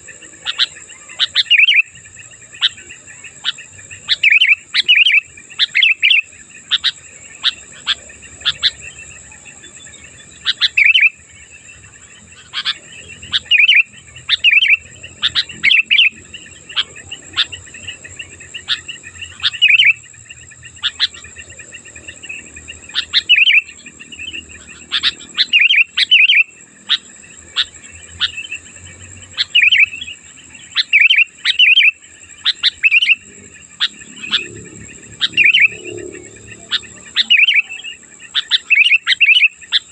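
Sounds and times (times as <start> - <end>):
bird chirping: 0.0 - 39.9
high-pitched drone: 31.2 - 39.9.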